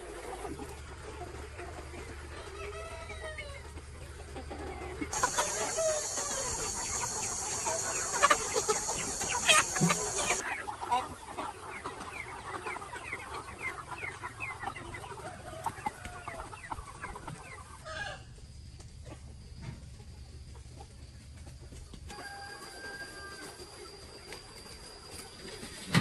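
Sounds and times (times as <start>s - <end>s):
chickens clucking: 0.1s - 18.2s.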